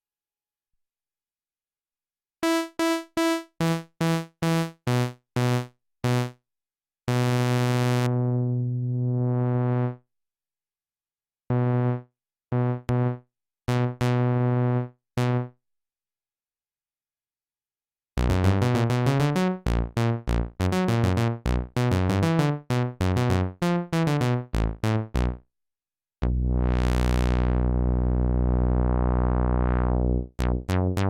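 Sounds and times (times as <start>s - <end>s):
synthesizer notes: 26.2s - 31.0s.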